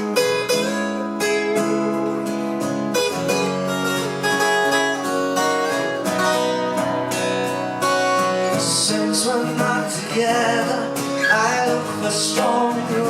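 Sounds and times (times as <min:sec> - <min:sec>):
acoustic guitar playing: 0:00.0 - 0:13.0.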